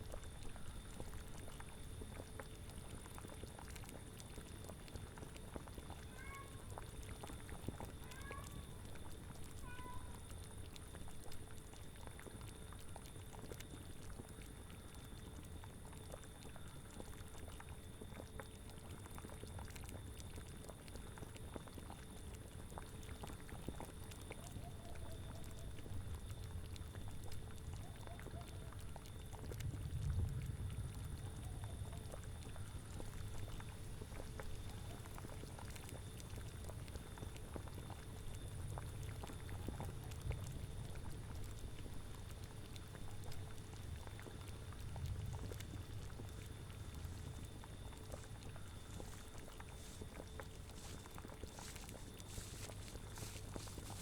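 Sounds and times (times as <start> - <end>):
cauldron bubbling: 0.0 - 6.0, 10.2 - 54.0
low wind rumble: 29.4 - 34.1, 44.0 - 47.7.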